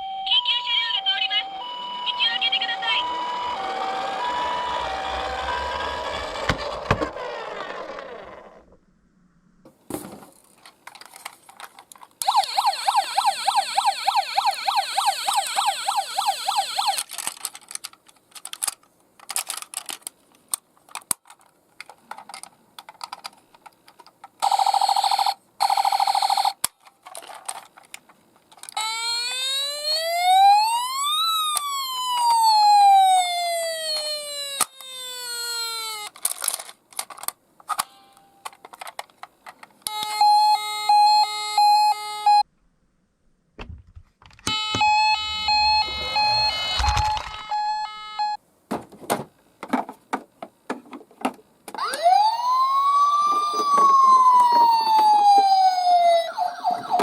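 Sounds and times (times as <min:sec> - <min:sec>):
ambulance siren: 0:00.0 - 0:06.6, 0:12.2 - 0:17.0, 0:28.8 - 0:36.1, 0:39.9 - 0:42.4, 0:44.5 - 0:48.4, 0:51.8 - 0:57.0
toy cars clicking and clattering: 0:03.1 - 0:08.6, 0:10.3 - 0:12.6, 0:14.9 - 0:28.9, 0:33.9 - 0:40.2.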